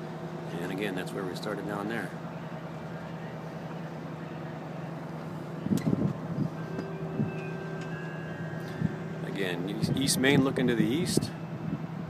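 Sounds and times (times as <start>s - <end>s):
thin whine: 0.0s - 12.0s
hydraulic drive hum: 2.2s - 10.5s.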